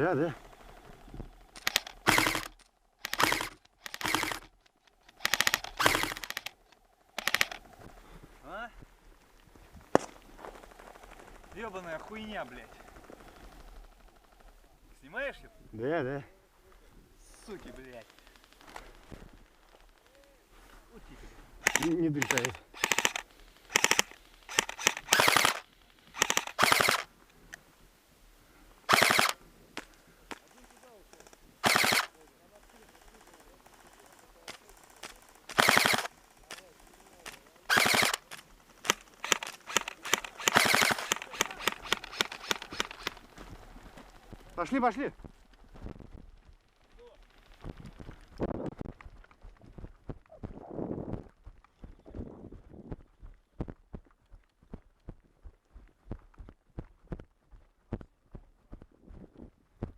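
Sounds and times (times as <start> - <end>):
airsoft guns firing bursts: 0.0 - 8.1, 21.6 - 27.1, 28.9 - 45.0.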